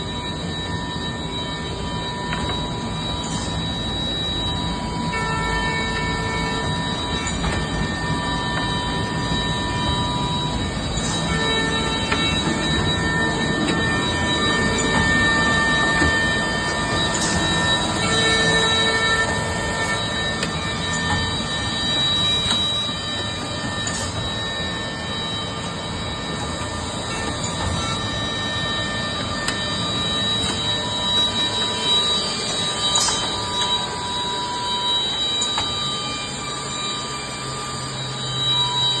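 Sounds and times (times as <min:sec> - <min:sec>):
high whining tones: 0:00.0 - 0:39.0
edge banding machine running: 0:05.2 - 0:39.0.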